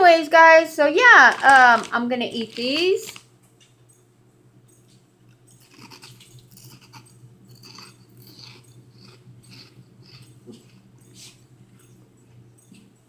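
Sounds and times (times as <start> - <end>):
steady low hum: 0.0 - 13.0
chewing and crunching snacks: 1.3 - 3.3, 4.8 - 12.8.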